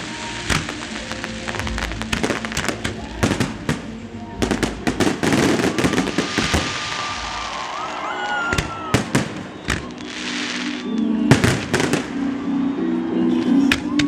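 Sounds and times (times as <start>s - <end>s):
hissing crackle: 0.0s - 8.1s, 8.9s - 12.5s
music playing: 0.0s - 14.0s
firework shells bursting: 0.2s - 7.4s, 11.3s - 12.4s
rising firework whistles: 3.3s - 12.9s.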